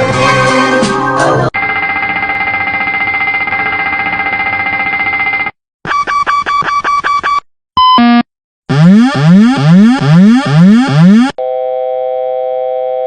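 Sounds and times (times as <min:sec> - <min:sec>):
rapidly pulsing warning tone: 0:08.7 - 0:11.4.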